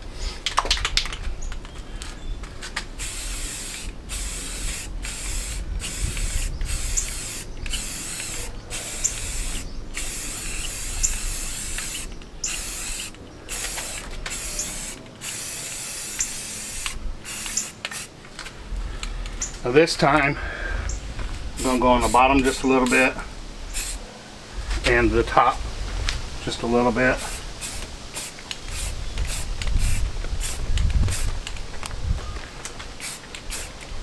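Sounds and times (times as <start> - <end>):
spray paint can hissing: 2.9 - 18.2, 21.6 - 24.0, 27.1 - 31.4, 33.0 - 33.9.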